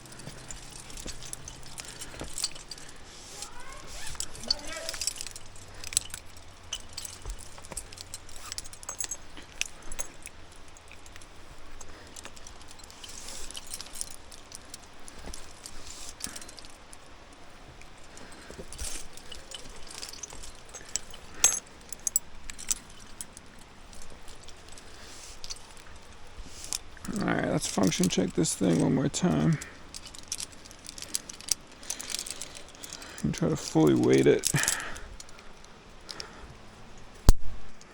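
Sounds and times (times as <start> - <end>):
climbing gear clinking and jingling: 0.0 - 37.9.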